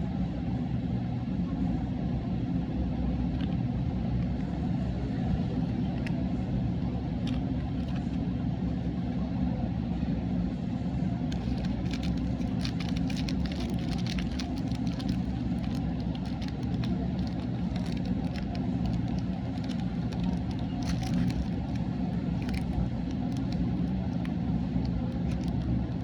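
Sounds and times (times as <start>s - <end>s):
low rumble: 11.3s - 26.0s
rapid crackling clicks: 11.3s - 26.0s.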